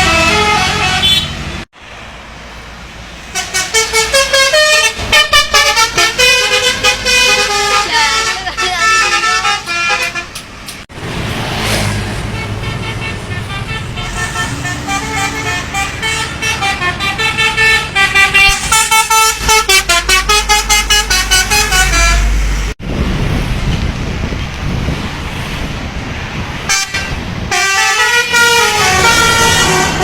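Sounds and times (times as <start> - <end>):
multi-tone musical air horn: 0.0 - 1.4, 3.4 - 10.4, 12.3 - 22.6, 26.7 - 30.0
bus engine: 0.0 - 30.0
street noise: 0.0 - 30.0.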